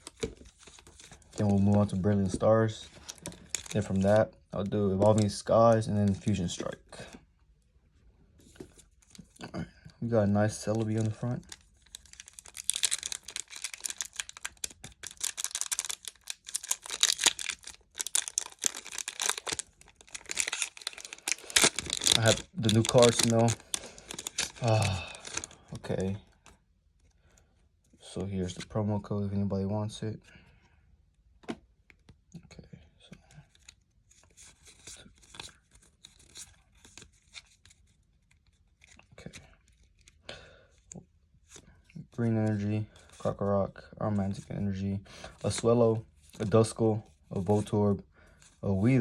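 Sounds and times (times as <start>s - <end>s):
foil wrapper crinkling and tearing: 2.8s - 4.2s, 10.4s - 25.8s.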